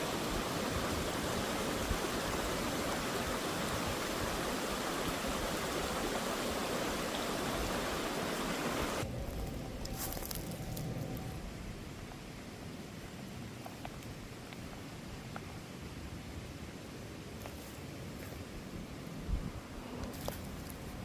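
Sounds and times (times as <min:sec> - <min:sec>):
creek water rushing: 0:00.0 - 0:09.4.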